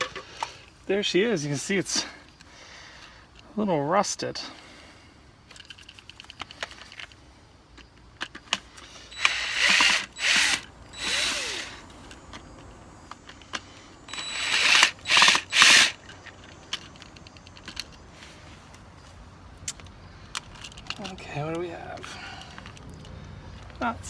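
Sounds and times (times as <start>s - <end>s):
screwdriver ratcheting: 9.1s - 12.3s, 14.1s - 16.1s.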